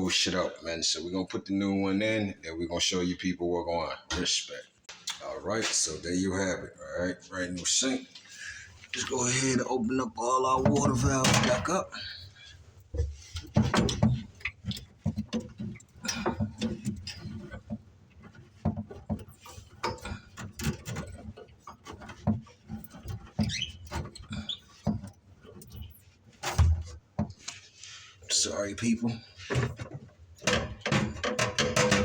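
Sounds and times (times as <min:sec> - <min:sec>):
clicks and knocks of fittings: 0:10.4 - 0:28.3, 0:29.4 - 0:32.0.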